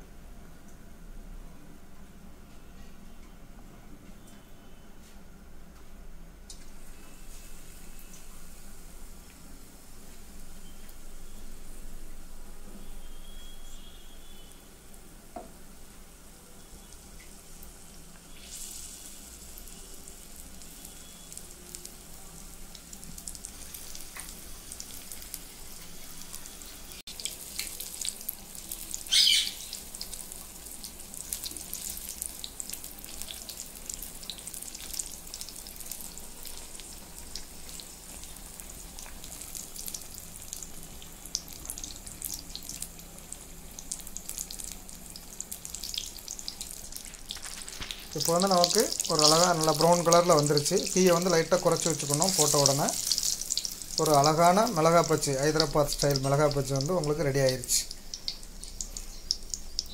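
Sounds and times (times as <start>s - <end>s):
food sizzling in hot oil: 12.8s - 59.9s.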